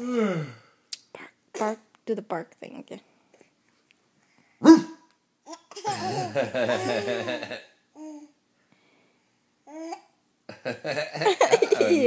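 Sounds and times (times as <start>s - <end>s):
baby laughing and babbling: 5.4s - 8.4s, 9.7s - 10.2s.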